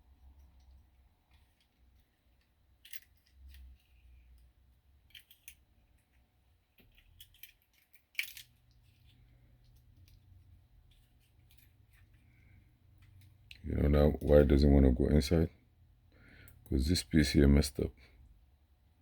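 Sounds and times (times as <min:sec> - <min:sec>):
faint metallic clicks of lock parts: 0:00.4 - 0:13.6.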